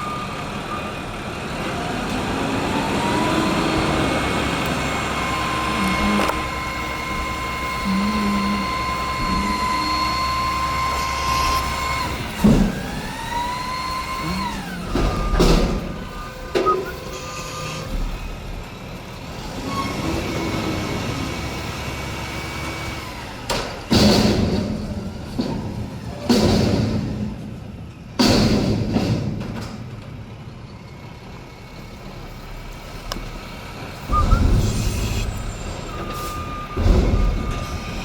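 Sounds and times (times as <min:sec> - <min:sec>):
garbage truck high whine: 0:00.0 - 0:28.2, 0:28.8 - 0:38.0
loud metallic bangs and clanks: 0:03.8 - 0:17.0, 0:23.6 - 0:30.1, 0:33.6 - 0:38.0.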